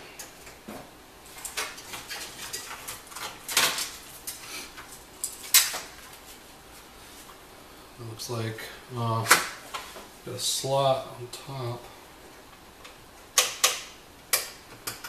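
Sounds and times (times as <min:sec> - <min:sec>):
computer case and cables clattering: 0:01.3 - 0:06.1.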